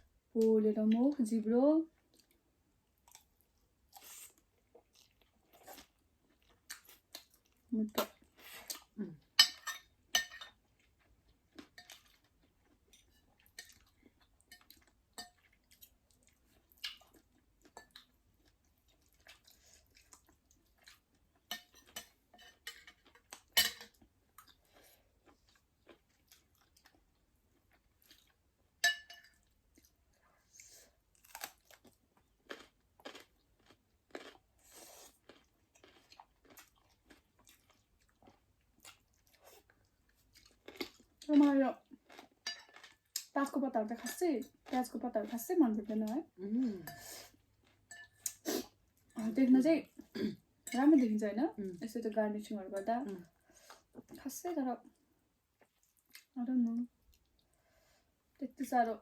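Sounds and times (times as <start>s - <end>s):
chewing and crunching food: 1.8s - 58.4s
utensils clinking on dish: 9.4s - 10.5s, 23.6s - 23.9s, 28.8s - 29.4s, 47.9s - 48.2s.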